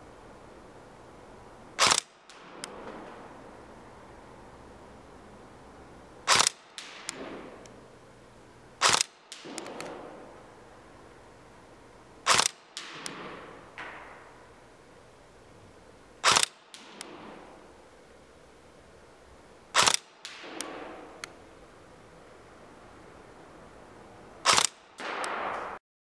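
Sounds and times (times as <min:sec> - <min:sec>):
airsoft gun shots: 0:01.8 - 0:03.4, 0:06.2 - 0:07.9, 0:08.8 - 0:10.5, 0:12.2 - 0:14.6, 0:16.2 - 0:17.8, 0:19.7 - 0:21.5, 0:24.4 - 0:25.8.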